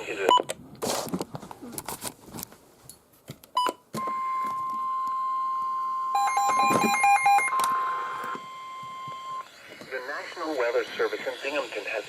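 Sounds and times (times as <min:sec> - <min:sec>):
short beeps: 0:03.6 - 0:09.5
steady warning alarm tone: 0:04.0 - 0:11.8.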